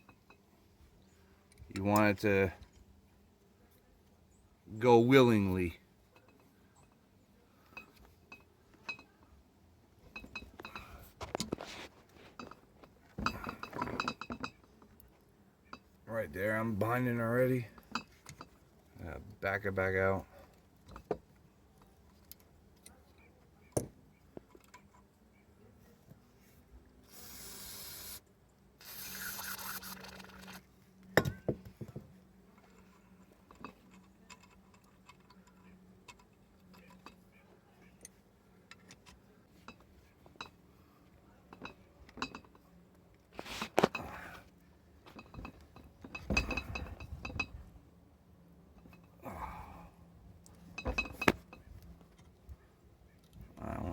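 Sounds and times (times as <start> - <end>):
short bursts of hiss: 27.1 - 28.2, 28.8 - 30.0
metal tap clicking and scraping: 32.7 - 37.3, 41.5 - 42.6, 50.4 - 52.3.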